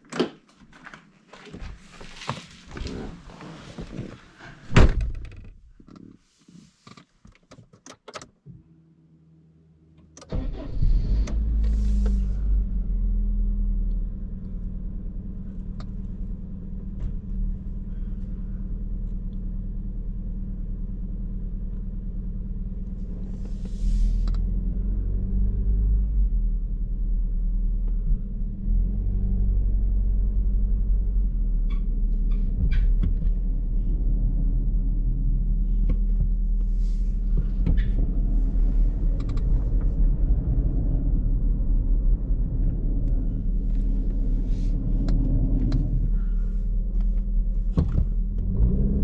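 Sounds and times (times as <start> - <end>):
vehicle engine rumble: 10.3 - 49.0.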